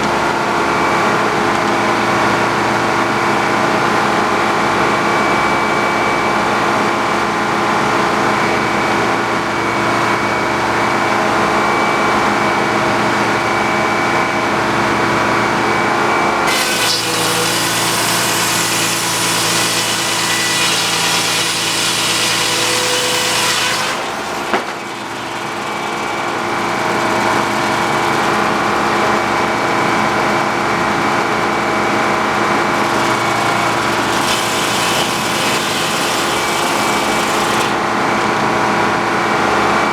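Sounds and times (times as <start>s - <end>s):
sawmill engine running: 11.0s - 39.9s
blade sawing through log: 16.4s - 29.3s, 32.2s - 37.8s.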